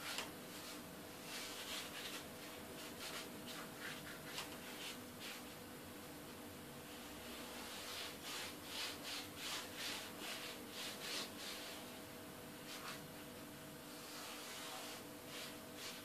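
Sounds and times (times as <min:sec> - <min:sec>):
brush rubbing on dough: 0:00.0 - 0:05.6, 0:07.2 - 0:11.9, 0:12.6 - 0:13.0, 0:13.9 - 0:16.0.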